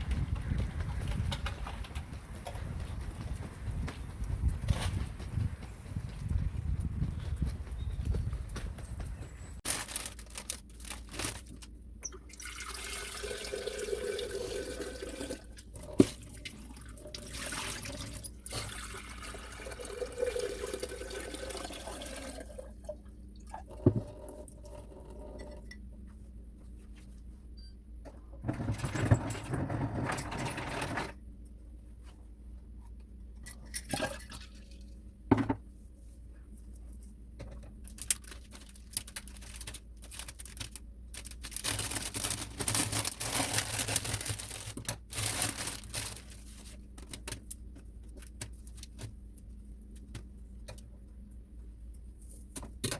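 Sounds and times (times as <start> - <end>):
water pouring: 12.3 - 22.9.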